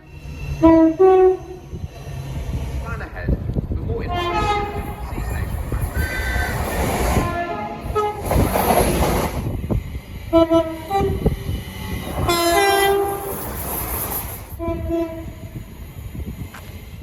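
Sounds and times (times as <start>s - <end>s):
low rumble of train: 0.0s - 17.0s
train horn blasts: 0.6s - 1.6s, 4.1s - 5.0s, 7.2s - 8.4s, 10.3s - 11.4s, 12.2s - 13.4s, 14.6s - 15.6s.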